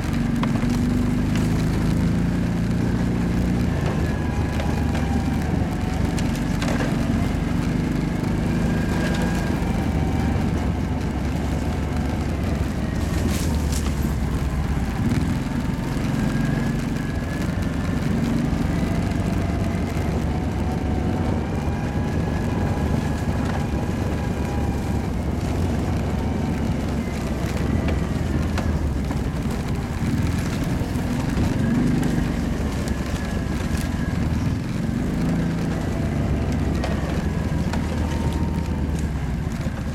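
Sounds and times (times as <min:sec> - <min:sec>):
quad engine revving: 0:00.0 - 0:39.9.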